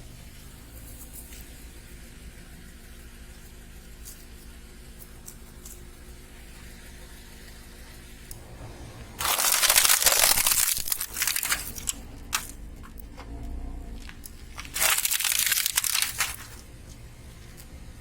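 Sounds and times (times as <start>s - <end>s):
low steady hum: 0.0s - 18.0s
tyre crunching objects: 8.4s - 17.8s.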